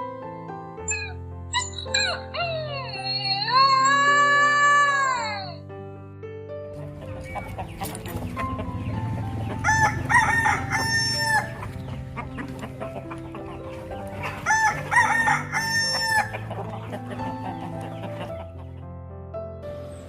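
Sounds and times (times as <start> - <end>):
background music: 0.0 - 20.0
rooster crowing: 9.6 - 11.5, 14.4 - 16.4.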